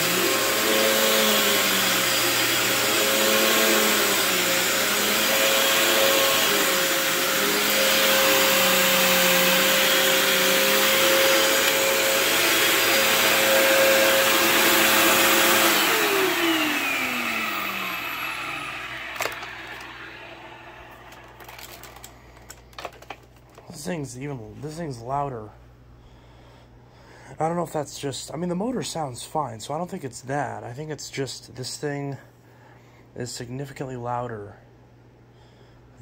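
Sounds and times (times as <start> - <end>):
motor winding down: 0.0 - 22.0
vacuum cleaner motor whine: 0.0 - 22.0.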